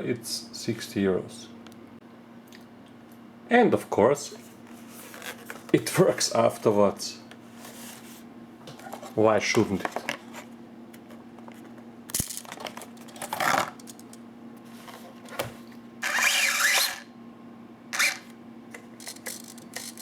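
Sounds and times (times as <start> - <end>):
steady low hum: 0.0 - 20.0
small electric motor whirring: 16.0 - 17.1, 17.9 - 18.3.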